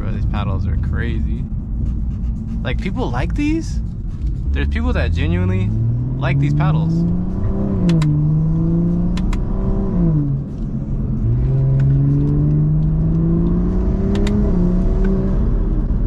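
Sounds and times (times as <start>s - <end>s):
car engine revving through gears: 4.3s - 16.0s
shift paddle clicks: 7.8s - 8.2s, 9.1s - 9.4s, 14.1s - 14.4s.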